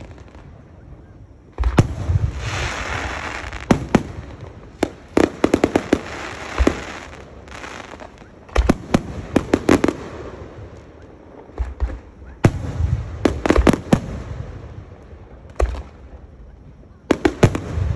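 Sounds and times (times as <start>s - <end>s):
fireworks bangs and crackling: 0.0s - 17.9s
fireworks fizzing hiss: 1.3s - 12.1s.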